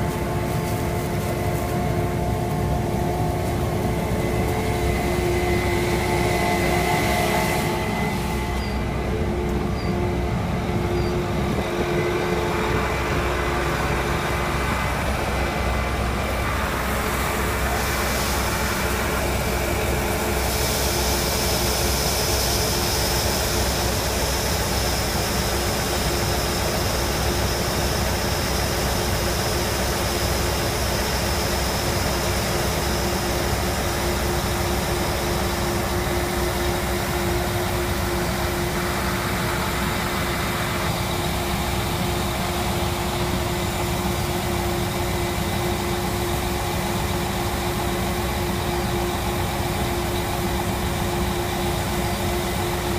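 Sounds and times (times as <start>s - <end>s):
farm machinery engine running: 0.0s - 52.9s
high whine: 0.0s - 52.9s
mid-pitched whine: 0.0s - 52.9s.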